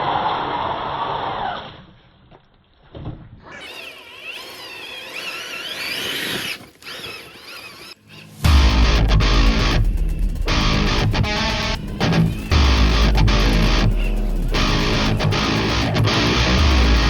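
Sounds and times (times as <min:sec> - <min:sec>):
electric motor and gearbox whine: 0:03.4 - 0:17.0
steady noise: 0:08.3 - 0:17.0.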